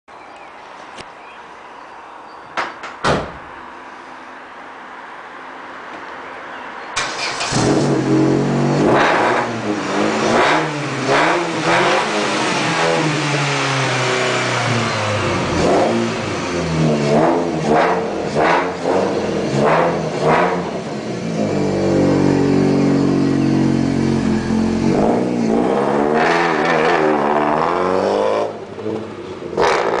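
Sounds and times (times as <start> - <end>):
car engine revving: 7.0 - 30.0.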